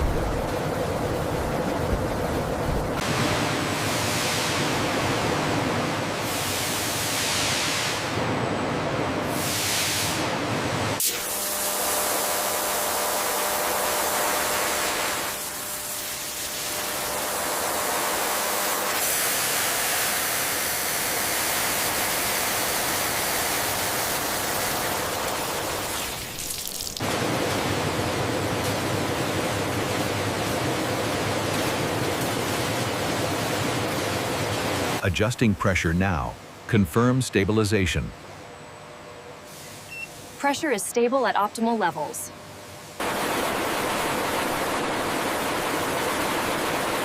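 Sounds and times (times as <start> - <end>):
factory machinery hissing: 39.4 - 40.8.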